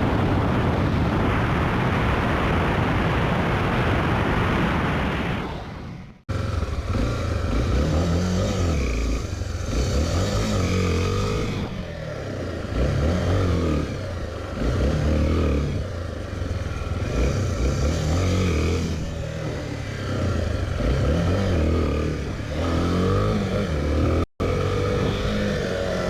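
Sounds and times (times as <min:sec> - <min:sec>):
motorcycle engine revving: 0:06.2 - 0:26.0.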